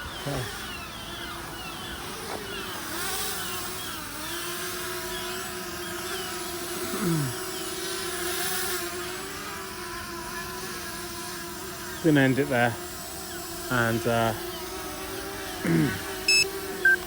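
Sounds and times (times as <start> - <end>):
drone propellers humming: 12.0 - 17.0.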